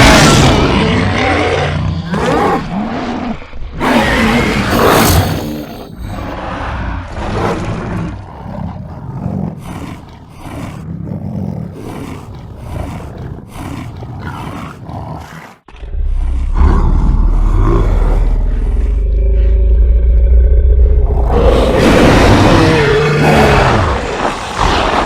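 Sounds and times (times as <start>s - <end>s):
loud deep rumble: 15.7s - 24.2s.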